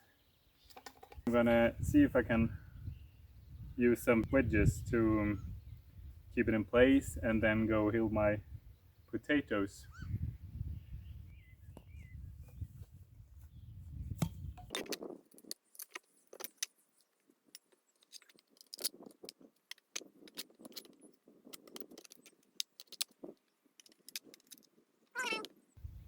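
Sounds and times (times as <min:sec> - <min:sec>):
metal tools and nails clinking: 0:14.7 - 0:25.5.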